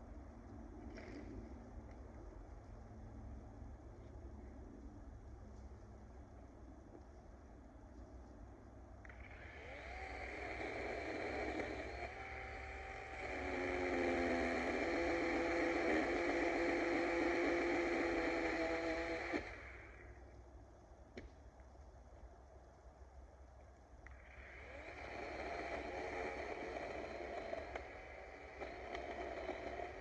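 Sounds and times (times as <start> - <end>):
electric chainsaw motor whining: 9.1 - 20.1, 24.1 - 30.0.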